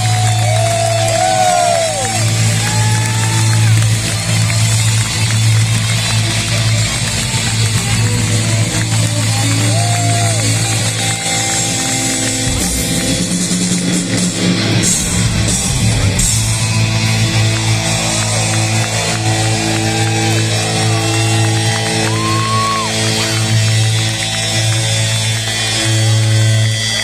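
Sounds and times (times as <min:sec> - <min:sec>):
distorted electric guitar: 0:00.0 - 0:27.0
hard rock band playing: 0:00.0 - 0:27.0
low bass note: 0:12.2 - 0:21.7.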